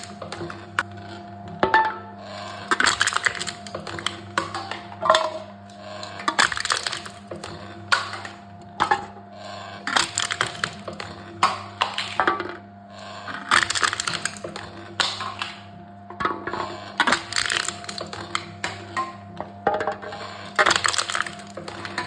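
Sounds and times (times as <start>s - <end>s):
cans being crushed: 0.0s - 0.4s, 2.7s - 4.7s, 6.3s - 8.2s, 9.9s - 11.0s, 13.4s - 15.6s, 17.0s - 18.8s, 20.5s - 22.0s.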